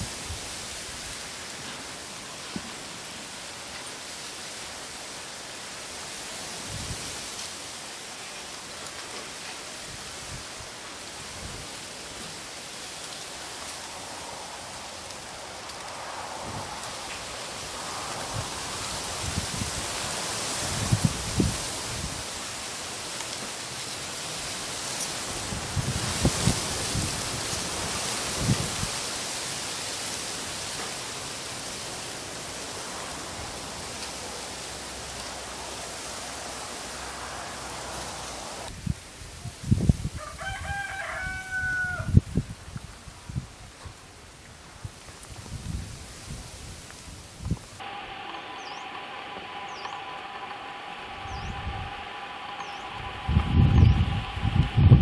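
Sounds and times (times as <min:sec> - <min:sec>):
wind rustling bamboo leaves: 0:00.0 - 0:55.0
wind gusts thumping microphone: 0:13.2 - 0:22.5, 0:24.4 - 0:29.3, 0:30.5 - 0:40.2, 0:42.0 - 0:55.0.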